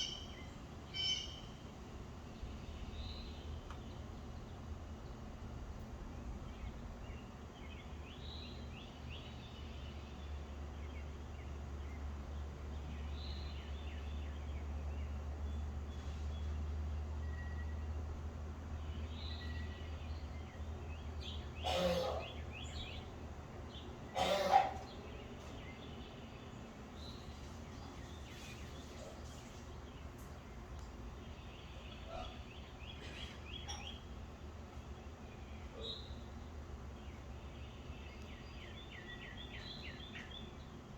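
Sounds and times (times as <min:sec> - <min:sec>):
birds chirping and calling: 0:00.0 - 0:01.6, 0:19.3 - 0:29.6
low background rumble: 0:00.0 - 0:40.9
songbirds chirping: 0:00.0 - 0:40.9.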